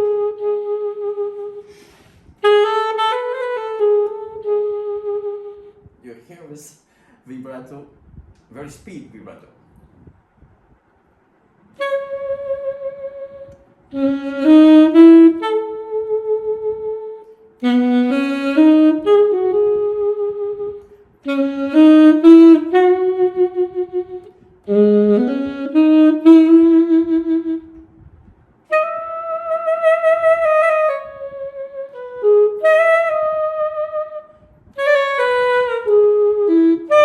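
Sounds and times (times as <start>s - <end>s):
saxophone melody with vibrato: 0.0s - 5.9s, 11.7s - 37.0s
player breathing: 1.6s - 2.4s, 6.9s - 7.2s.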